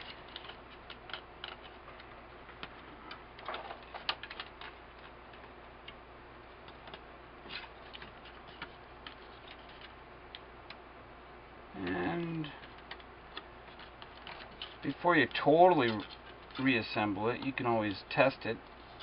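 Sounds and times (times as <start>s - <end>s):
clicks and taps of small parts: 0.0s - 6.0s, 12.6s - 16.7s.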